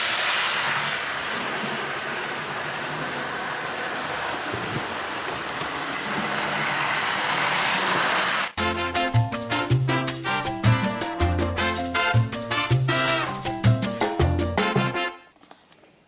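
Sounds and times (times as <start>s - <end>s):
train running: 0.0s - 8.6s.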